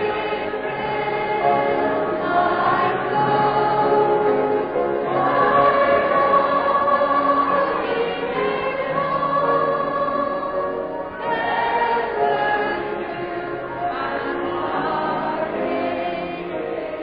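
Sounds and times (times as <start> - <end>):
choir singing a hymn: 0.0 - 17.0.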